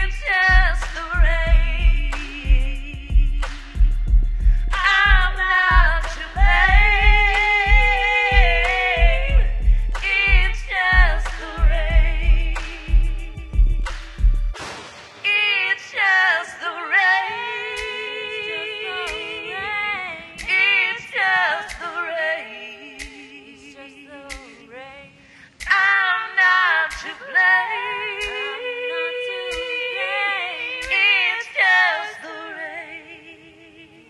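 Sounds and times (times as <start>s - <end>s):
female voices singing harmonies: 0.0s - 13.6s, 15.2s - 34.0s
soft steady beat: 0.0s - 14.6s, 21.7s - 22.0s, 23.0s - 23.4s, 24.3s - 24.6s.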